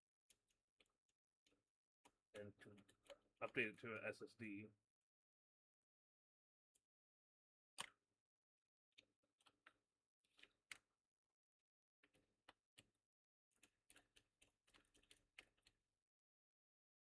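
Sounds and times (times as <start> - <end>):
small laptop parts clicking: 12.0 - 15.9.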